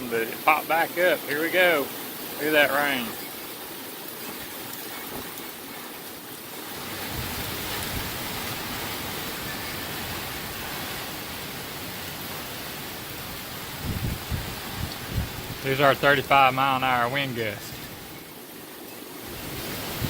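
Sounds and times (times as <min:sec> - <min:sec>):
heavy rain pouring: 0:00.0 - 0:20.0
wind gusts rumbling: 0:06.6 - 0:18.5, 0:19.1 - 0:20.0.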